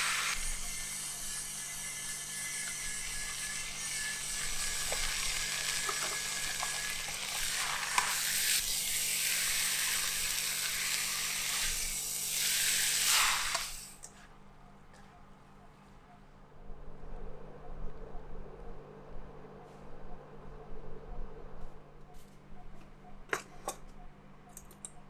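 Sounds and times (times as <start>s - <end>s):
food sizzling in hot pan: 0.0s - 14.0s.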